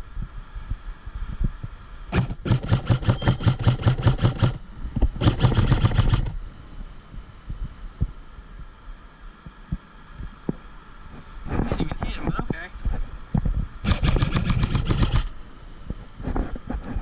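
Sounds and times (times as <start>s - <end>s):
airsoft gun full-auto bursts: 2.1s - 4.6s, 5.2s - 6.3s, 13.8s - 15.3s.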